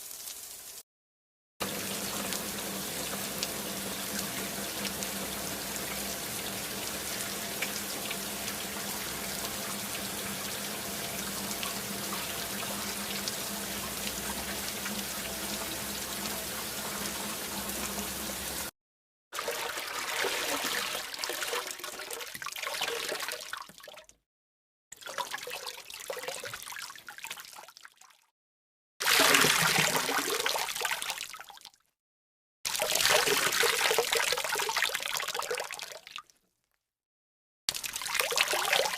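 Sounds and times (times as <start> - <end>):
running and trickling water: 1.6 - 18.7, 19.4 - 24.2, 25.0 - 28.3, 29.0 - 31.8, 32.7 - 36.3, 37.7 - 38.9.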